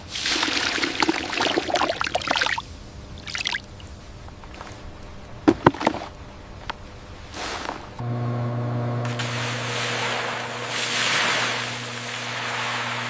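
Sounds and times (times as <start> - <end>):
water pouring and splashing: 0.0 - 4.7, 9.1 - 13.0.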